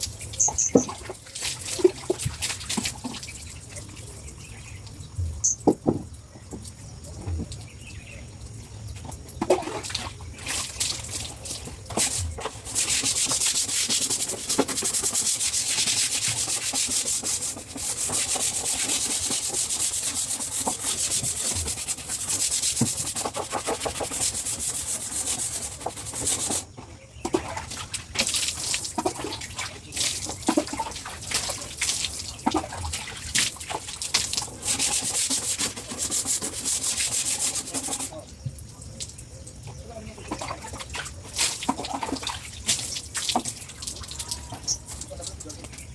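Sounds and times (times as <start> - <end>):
scraping strokes on hard surface: 11.9 - 26.7, 34.5 - 38.2.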